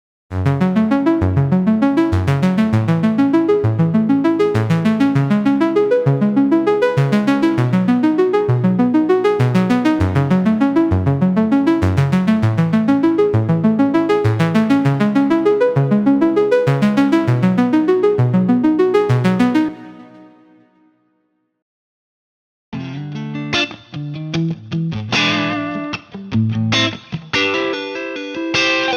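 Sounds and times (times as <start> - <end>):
synthesizer arpeggio: 0.3 - 20.8.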